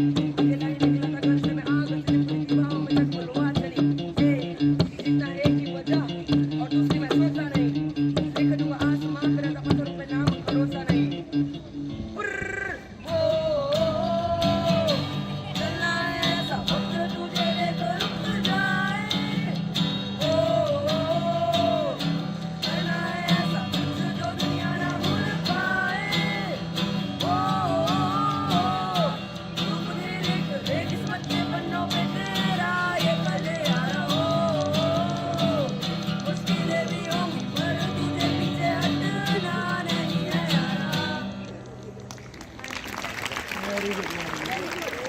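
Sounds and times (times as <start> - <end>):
people singing: 22.6 - 41.3.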